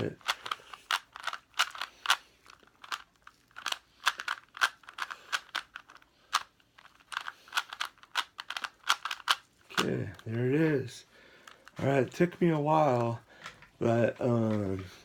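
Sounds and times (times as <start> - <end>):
puzzle cube clicking: 0.0 - 10.6.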